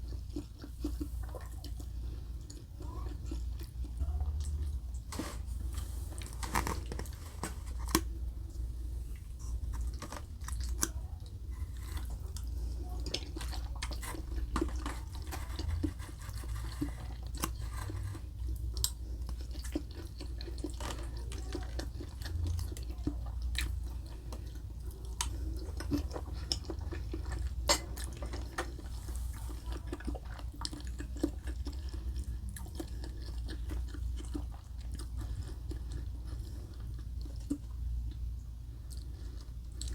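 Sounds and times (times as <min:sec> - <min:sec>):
low steady hum: 0:00.0 - 0:39.9
chewing mouth clicks and smacks: 0:11.8 - 0:38.2.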